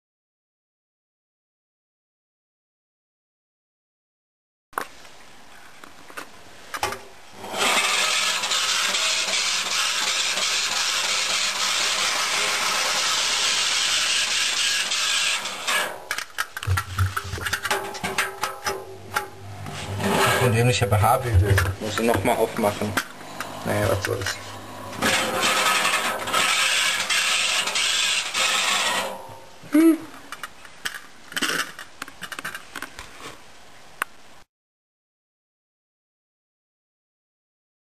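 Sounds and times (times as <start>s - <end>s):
washing machine running: 7.4s - 16.1s, 16.7s - 29.3s
loud steady scraping: 7.4s - 29.5s
hands scraping and rubbing: 13.7s - 18.6s.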